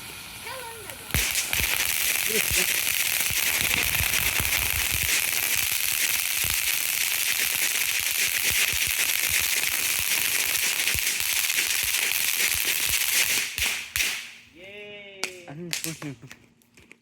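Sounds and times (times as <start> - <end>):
firework hissing and crackling: 0.0 - 14.5.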